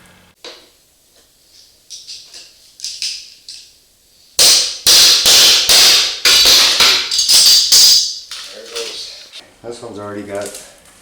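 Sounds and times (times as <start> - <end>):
pry bar knocks: 4.4 - 9.2.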